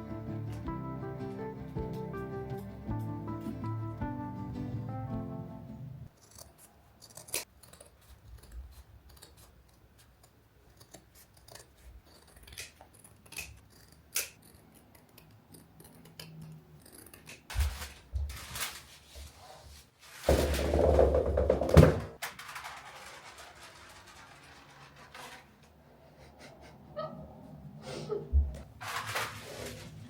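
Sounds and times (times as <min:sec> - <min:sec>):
sharp clicks and snips: 0:06.1 - 0:17.6
rustling: 0:16.8 - 0:25.9, 0:28.6 - 0:30.0.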